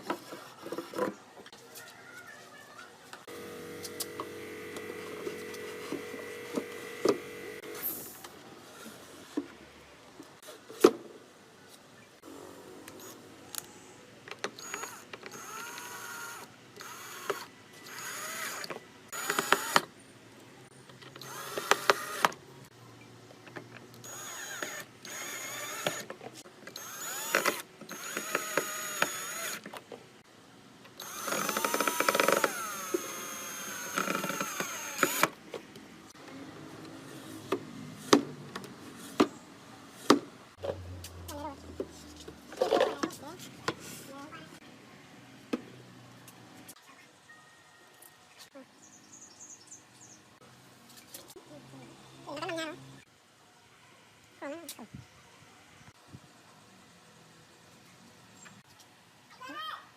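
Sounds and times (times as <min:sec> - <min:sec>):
power drill running: 0:03.3 - 0:08.0, 0:14.6 - 0:19.8, 0:21.2 - 0:22.3, 0:24.0 - 0:26.0, 0:26.8 - 0:29.6, 0:31.0 - 0:35.3.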